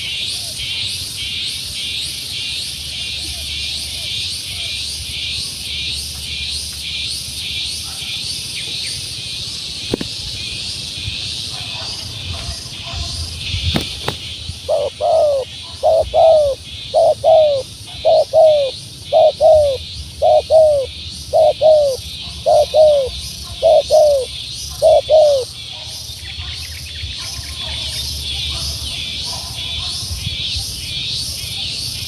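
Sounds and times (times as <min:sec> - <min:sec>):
dove cooing: 0:14.6 - 0:25.5.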